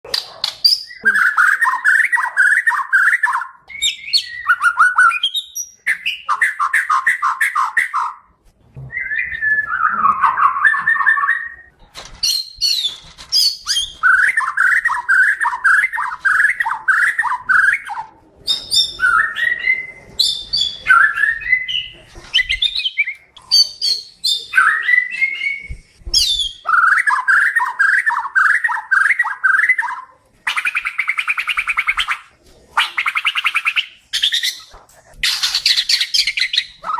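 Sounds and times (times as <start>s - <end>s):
songbird singing varied phrases: 0.7s - 8.1s.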